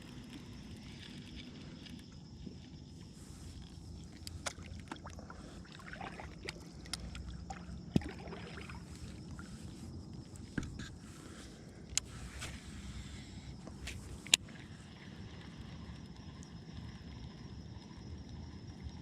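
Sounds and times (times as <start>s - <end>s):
low steady rumble: 0.0s - 19.0s
clicks and knocks against kayak hull: 10.4s - 11.0s.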